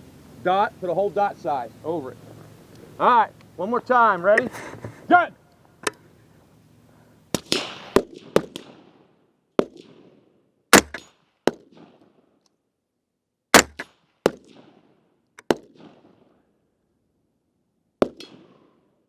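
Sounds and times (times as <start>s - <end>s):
rifle shots echoing: 7.3s - 12.3s, 13.5s - 16.5s, 18.0s - 18.9s.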